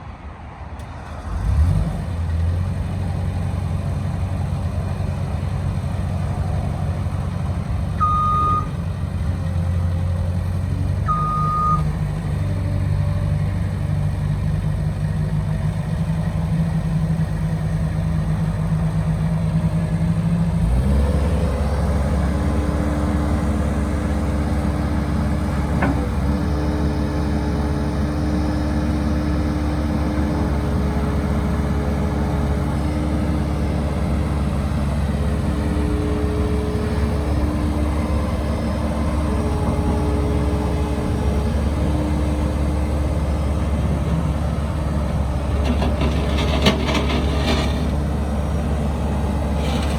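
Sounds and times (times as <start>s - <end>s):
diesel engine running: 1.4s - 49.9s
short machine beeps: 8.0s - 8.7s, 11.1s - 11.9s.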